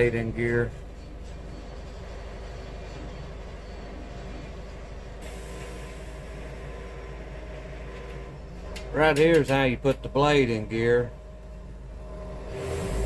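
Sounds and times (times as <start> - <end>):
sawmill engine idling: 4.8 - 13.0.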